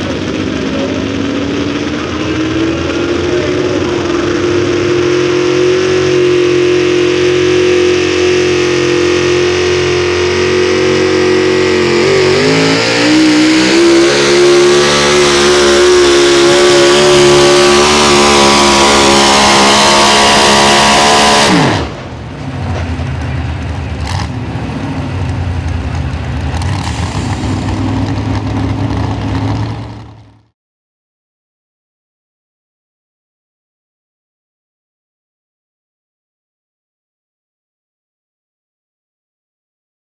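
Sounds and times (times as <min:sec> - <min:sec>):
pulling engine at full throttle: 0:00.0 - 0:30.5.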